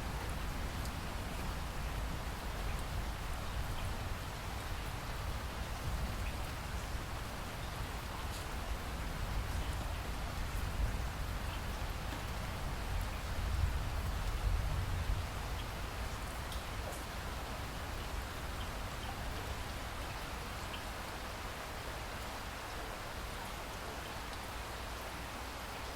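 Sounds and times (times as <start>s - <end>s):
steady rain: 0.0s - 25.9s.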